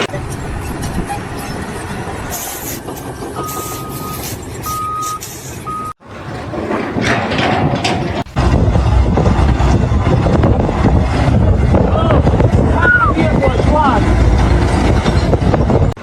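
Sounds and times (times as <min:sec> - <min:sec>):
heavy vehicle rumbling: 0:00.0 - 0:16.0
reversing alarm beeps: 0:03.4 - 0:06.0.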